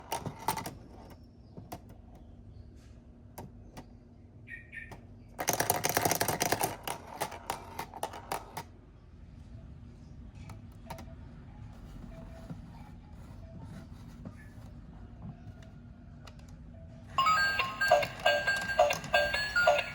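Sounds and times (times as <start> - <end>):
marbles clicking on plastic track: 5.4 - 8.7, 17.4 - 19.9.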